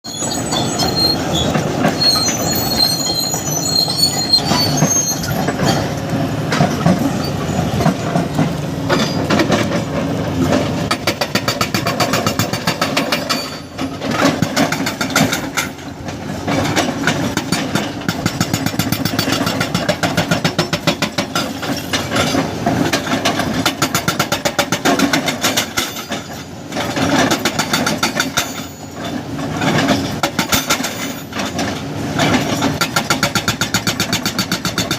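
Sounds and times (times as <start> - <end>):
thin high squealing: 0.1 - 5.9
excavator engine running: 3.6 - 28.4.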